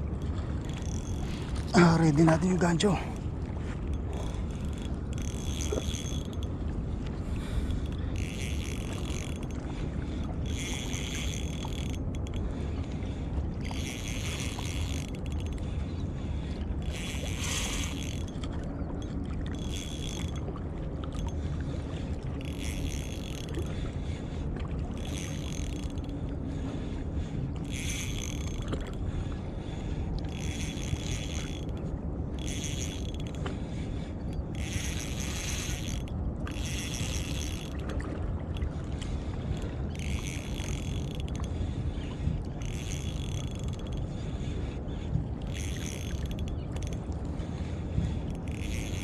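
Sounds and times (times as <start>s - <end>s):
steady low rumble: 0.0s - 49.0s
spinning reel being cranked: 4.5s - 6.5s, 8.2s - 9.5s, 10.4s - 12.4s, 13.6s - 15.5s, 16.8s - 18.4s, 19.5s - 20.3s, 22.4s - 23.6s, 25.0s - 26.1s, 27.6s - 28.6s, 30.3s - 31.7s, 32.4s - 33.4s, 34.5s - 37.7s, 39.9s - 41.4s, 42.6s - 44.0s, 45.4s - 47.0s, 48.5s - 49.0s.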